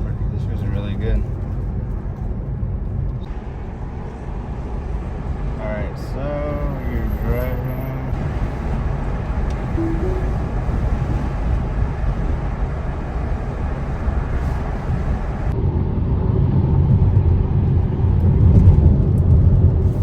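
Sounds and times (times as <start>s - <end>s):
road and tyre rumble: 0.0s - 20.0s.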